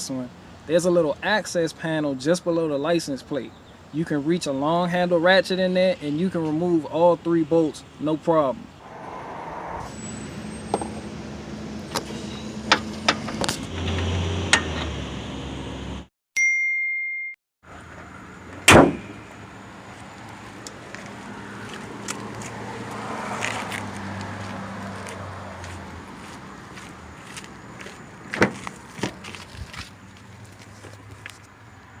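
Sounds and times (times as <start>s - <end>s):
ding-like tone: 16.4s - 17.4s
loud metal clang: 18.6s - 19.3s.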